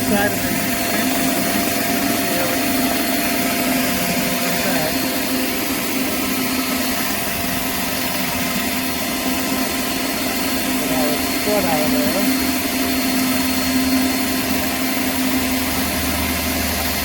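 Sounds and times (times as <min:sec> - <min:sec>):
pressure washer spray hissing: 0:00.0 - 0:12.3.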